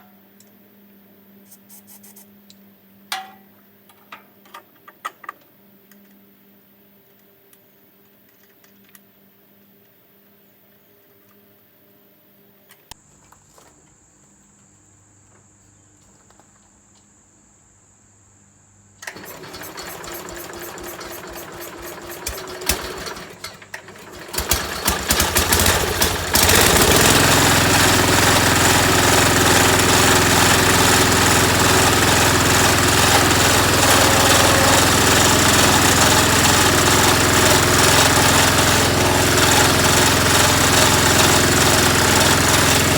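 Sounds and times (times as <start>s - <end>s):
tractor engine starting and running: 19.0s - 42.9s.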